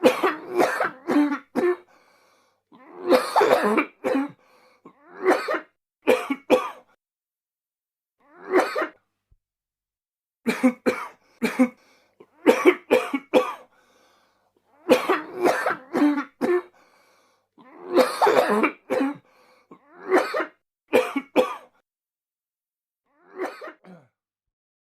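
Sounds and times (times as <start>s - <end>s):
man coughing: 0.0s - 1.8s, 3.1s - 6.9s, 10.5s - 11.8s, 12.5s - 13.7s, 14.9s - 16.7s, 18.0s - 19.2s, 20.0s - 21.7s, 23.4s - 24.1s.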